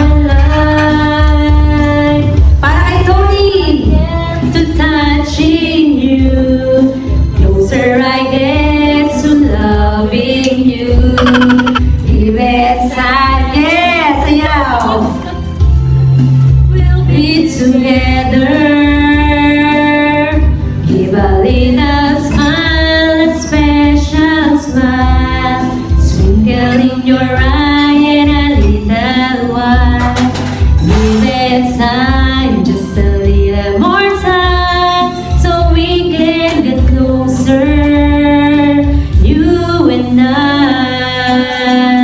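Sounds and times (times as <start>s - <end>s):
woman singing: 0.0s - 15.4s, 16.7s - 42.0s
backing music with bass beat: 10.9s - 12.0s.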